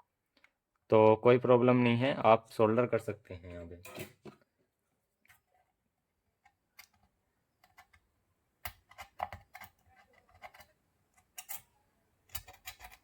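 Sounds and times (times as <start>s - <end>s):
tools clicking and tapping: 8.6s - 11.7s, 12.3s - 13.0s.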